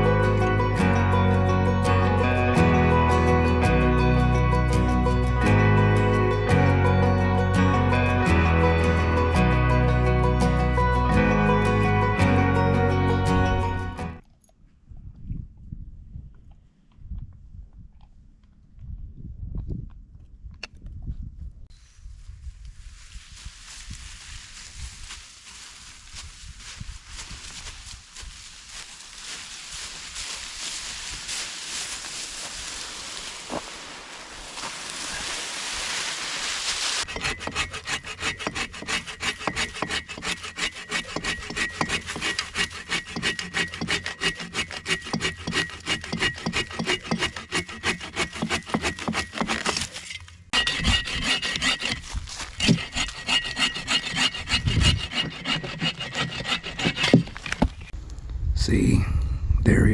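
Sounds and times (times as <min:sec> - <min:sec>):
steady hiss: 0:31.5 - 0:37.0
hand saw cutting wood: 0:37.0 - 0:57.9.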